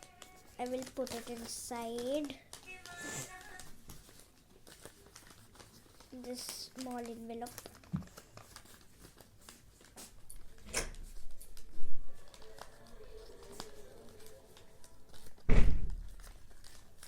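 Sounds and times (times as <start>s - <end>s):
paper rustling: 0.0s - 17.0s
sharp knock: 15.5s - 15.9s
heavy thump: 15.5s - 16.1s.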